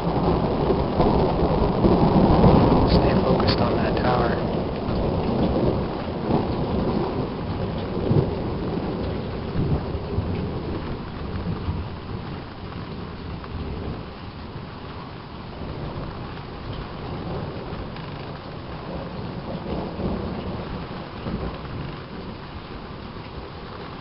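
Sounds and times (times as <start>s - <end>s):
steady rain: 0.0s - 24.0s
thunder rumbling: 0.0s - 24.0s.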